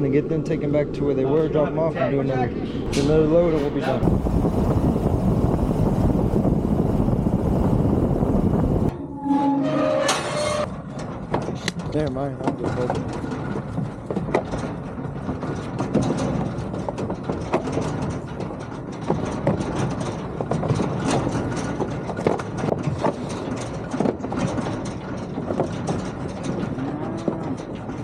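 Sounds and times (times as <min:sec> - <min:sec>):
vehicle running: 0:00.0 - 0:08.9
metal trailer rattling and clanking: 0:10.0 - 0:28.0.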